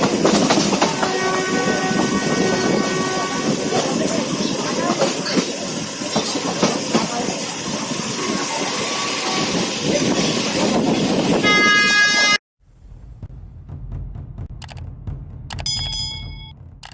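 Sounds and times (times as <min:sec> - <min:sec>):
train rattling on rails: 0:00.0 - 0:12.4
train horn: 0:00.8 - 0:05.1, 0:08.0 - 0:10.1, 0:11.4 - 0:12.4.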